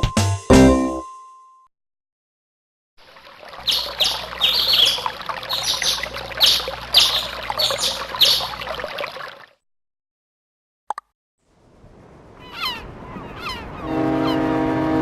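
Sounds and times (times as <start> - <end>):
birdsong ringtone chirps: 3.7 - 8.6.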